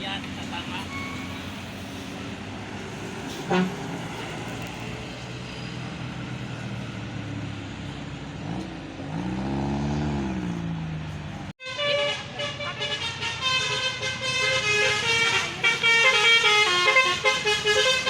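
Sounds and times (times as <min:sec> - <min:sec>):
roadside traffic: 0:00.0 - 0:18.0
low engine tone rising and falling: 0:06.0 - 0:11.5
large vehicle engine running: 0:10.2 - 0:11.5.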